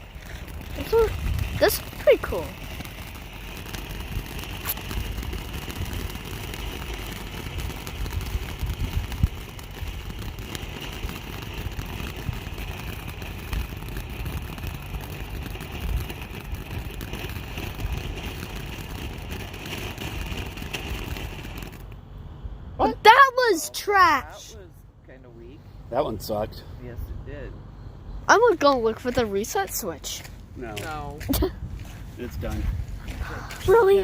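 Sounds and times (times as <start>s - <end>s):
firework hissing spray: 0.0s - 22.0s
faint crackles: 0.0s - 22.1s, 28.3s - 34.0s
low rumble: 0.0s - 23.1s, 24.2s - 29.5s.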